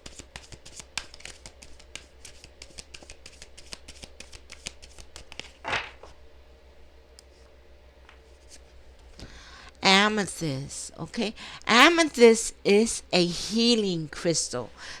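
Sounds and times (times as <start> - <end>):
cards being shuffled: 0.0 - 6.2.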